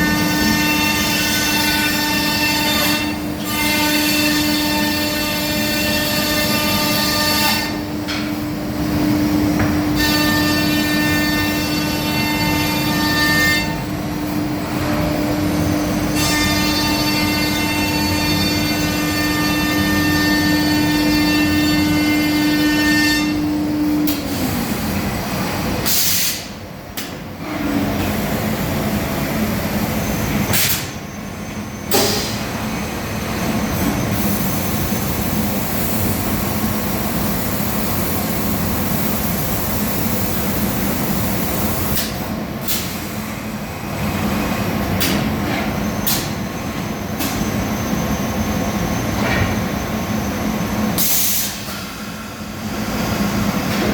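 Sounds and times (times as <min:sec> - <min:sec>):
machine spindle whine: 0:27.3 - 0:53.9.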